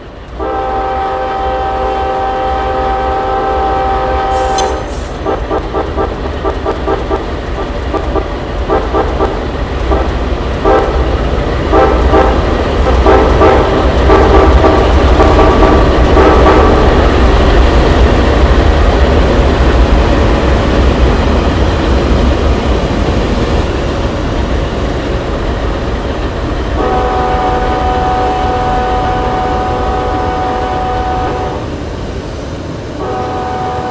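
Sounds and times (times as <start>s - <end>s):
train rumbling past: 0.0s - 33.9s
locomotive air horn blasts: 0.4s - 6.1s, 10.6s - 11.0s, 11.7s - 16.9s, 26.8s - 31.7s, 33.0s - 33.9s.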